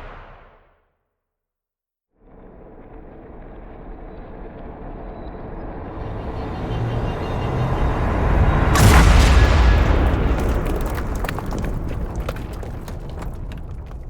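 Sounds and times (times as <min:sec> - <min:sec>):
loud explosion: 0:00.0 - 0:00.6, 0:08.5 - 0:14.0.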